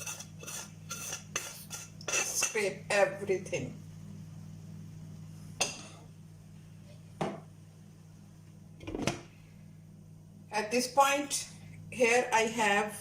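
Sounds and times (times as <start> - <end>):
utensil scraping against a dish: 0.0 - 2.7
steady low hum: 0.0 - 13.0.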